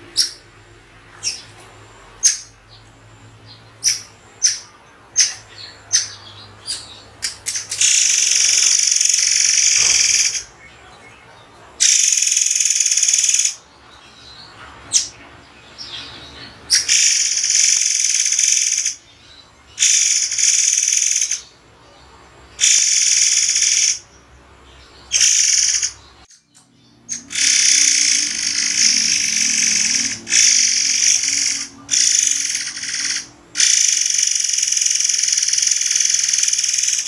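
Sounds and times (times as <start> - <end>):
songbird singing harsh bursts: 7.6 - 10.5, 11.8 - 13.6, 16.7 - 19.0, 19.8 - 21.5, 22.6 - 24.0, 25.1 - 26.0, 27.1 - 37.0.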